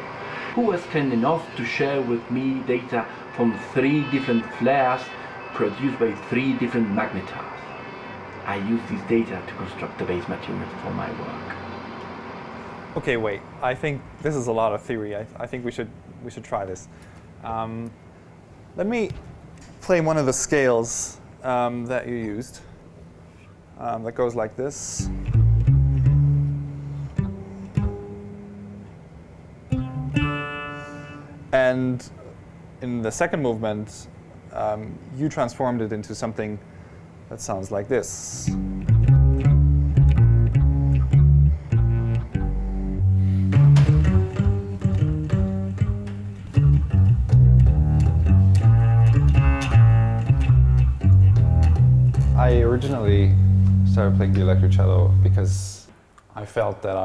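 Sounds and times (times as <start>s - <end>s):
plucked cello notes: 25.0s - 28.9s, 29.7s - 31.5s, 38.5s - 55.7s.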